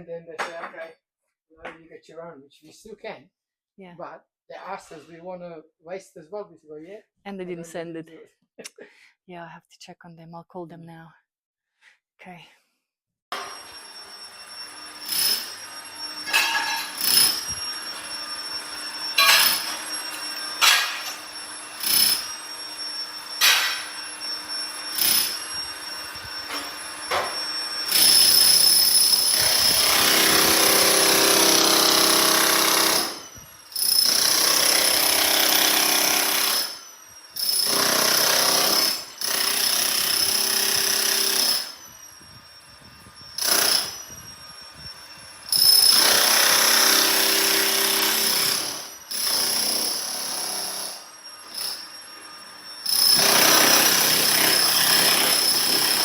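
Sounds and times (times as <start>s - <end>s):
jackhammer chiselling tiles: 14.9s - 17.6s, 18.6s - 22.3s, 24.8s - 25.4s, 27.9s - 36.8s, 37.4s - 41.8s, 43.4s - 44.0s, 45.5s - 51.9s, 52.8s - 56.0s.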